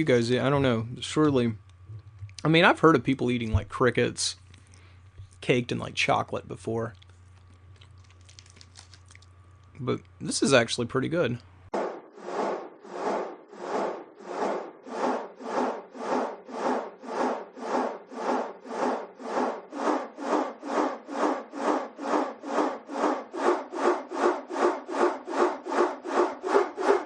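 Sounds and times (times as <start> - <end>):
rasping strokes: 11.8 - 27.0.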